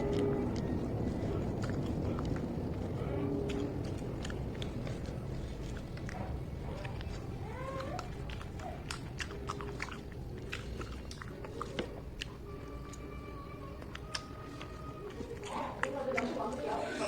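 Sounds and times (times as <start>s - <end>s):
person chewing and biting: 0.0s - 16.6s
wet mouth clicks and crunches: 0.0s - 16.8s.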